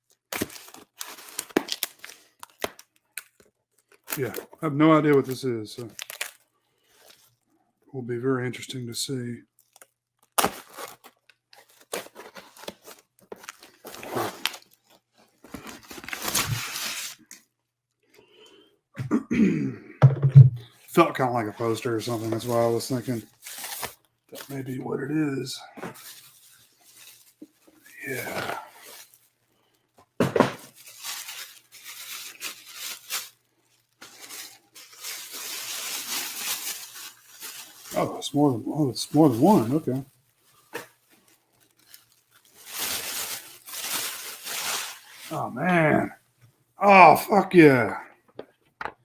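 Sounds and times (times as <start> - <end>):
packaging tearing and crinkling: 0.1 - 6.4, 9.6 - 17.4, 21.6 - 24.8, 25.9 - 29.3, 30.4 - 45.5
paper and cardboard rustling: 0.4 - 2.8, 10.4 - 17.4, 21.0 - 24.8, 25.8 - 29.4, 30.1 - 45.5.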